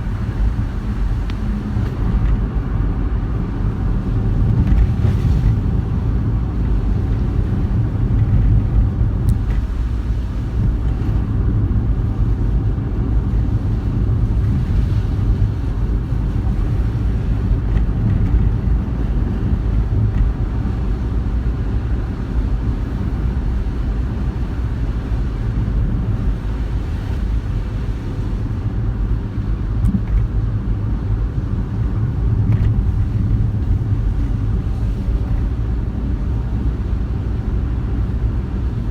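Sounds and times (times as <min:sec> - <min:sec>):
tyre and engine rumble: 0:00.0 - 0:38.9.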